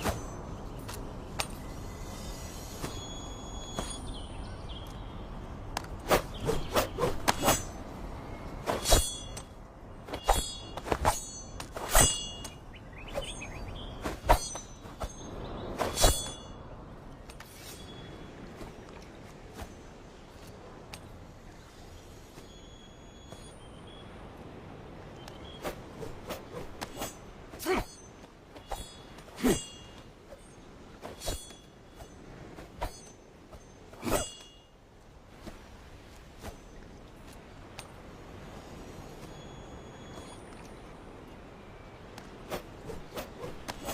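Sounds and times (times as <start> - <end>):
sword blade clanging: 8.7 - 9.5, 10.2 - 12.6, 15.8 - 16.6, 28.7 - 32.2, 34.0 - 34.7.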